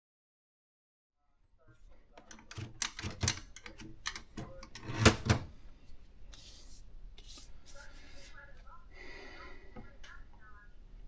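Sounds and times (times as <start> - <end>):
manual typewriter key strikes: 2.3 - 5.4.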